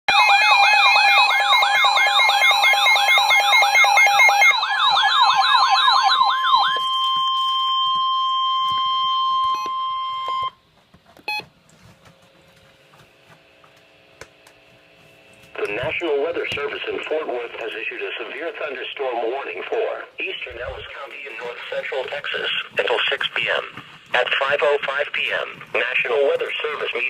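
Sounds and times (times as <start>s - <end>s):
warbling emergency alarm: 0.1s - 10.6s
faint hum: 6.8s - 27.0s.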